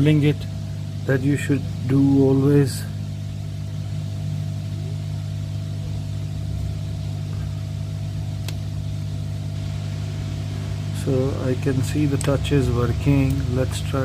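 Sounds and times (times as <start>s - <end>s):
low electrical hum: 0.0s - 14.0s
small click: 8.4s - 8.6s.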